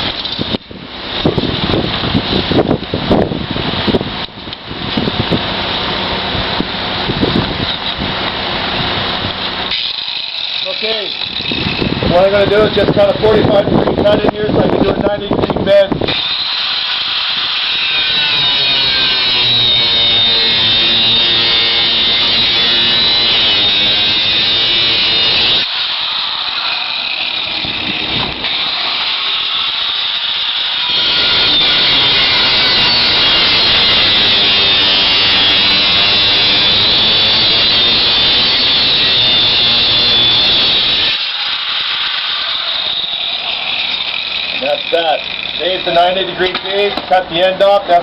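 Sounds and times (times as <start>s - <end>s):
angle grinder cutting metal: 9.4s - 13.4s, 16.0s - 47.0s.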